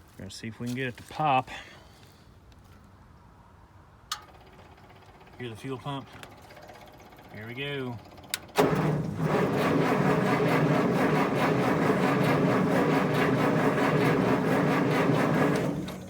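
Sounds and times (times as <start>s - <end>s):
engine cranking by starter motor: 4.1s - 16.0s.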